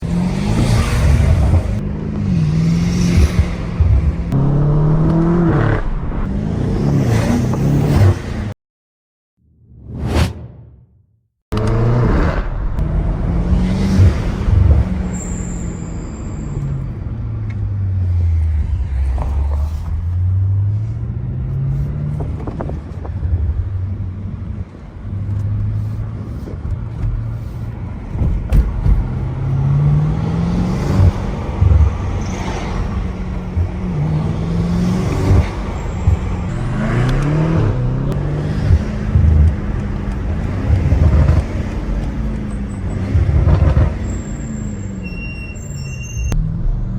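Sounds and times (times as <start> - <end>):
car engine revving through gears: 0.0 - 8.5, 11.5 - 15.2, 28.9 - 44.2.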